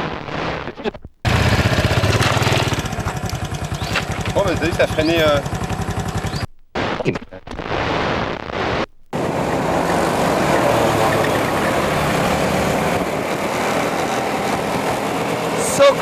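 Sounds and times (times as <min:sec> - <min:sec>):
low engine running: 0:01.2 - 0:06.9, 0:08.9 - 0:16.0
moving vehicle rushing noise: 0:09.2 - 0:16.0.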